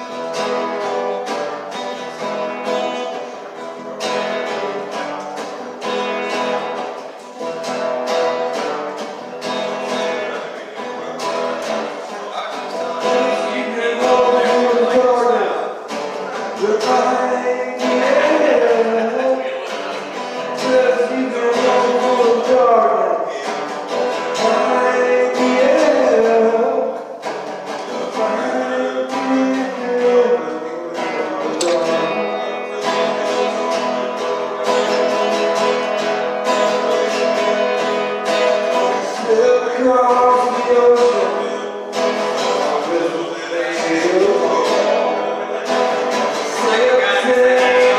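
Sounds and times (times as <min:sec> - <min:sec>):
acoustic guitar strumming: 0:00.0 - 0:47.9
person singing: 0:09.5 - 0:27.2, 0:27.8 - 0:47.9.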